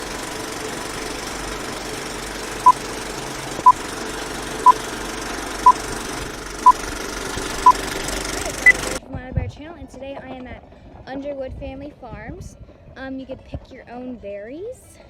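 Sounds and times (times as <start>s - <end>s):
mechanical rattling hum: 0.0s - 9.0s
short electronic beeps: 8.6s - 8.8s.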